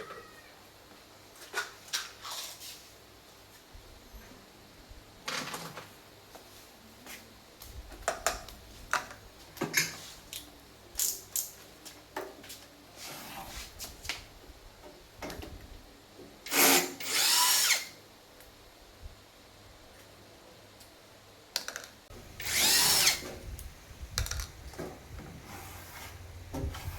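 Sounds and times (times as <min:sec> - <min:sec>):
handheld power tool whining: 0:16.5 - 0:17.9, 0:22.2 - 0:23.4
tools clicking and knocking: 0:24.1 - 0:24.9.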